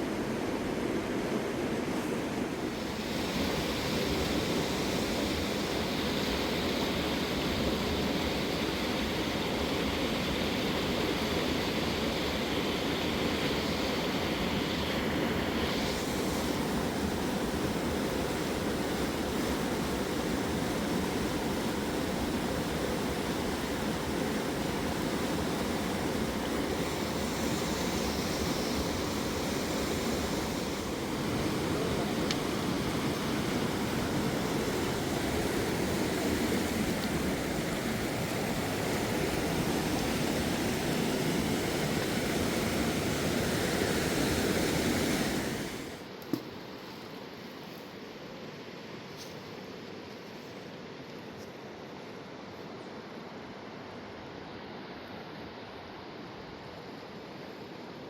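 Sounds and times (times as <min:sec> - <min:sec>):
river rushing: 0:00.0 - 0:46.2.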